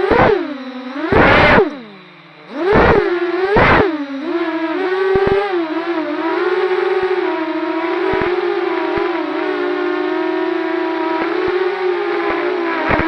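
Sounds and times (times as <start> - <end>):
motor whine: 0.0 - 13.0
faint ticks: 8.1 - 9.1.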